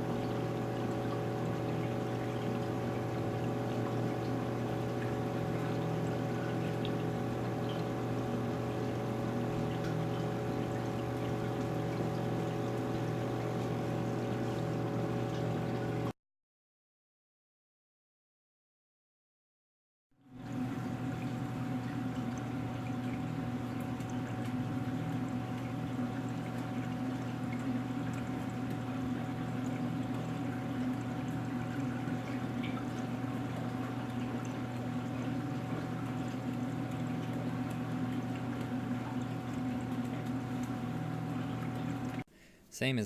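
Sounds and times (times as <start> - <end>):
moving water: 0.0 - 16.1, 20.3 - 42.2
pump motor hum: 0.0 - 16.1, 20.2 - 43.0.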